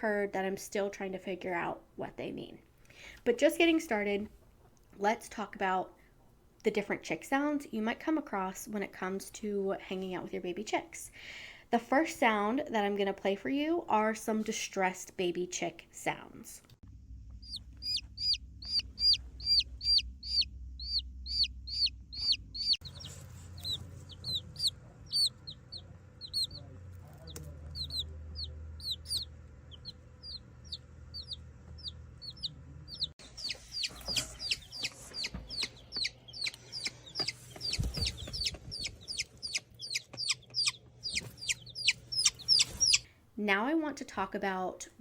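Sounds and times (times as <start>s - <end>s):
baby chicks peeping: 17.4s - 43.1s.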